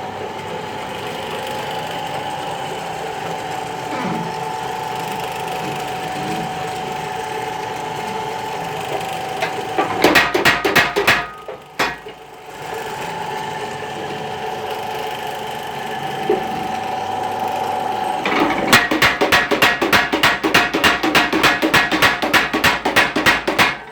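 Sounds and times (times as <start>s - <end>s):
power hammer drive tone: 6.7s - 13.6s, 17.9s - 23.9s
power hammer blows: 18.3s - 23.9s.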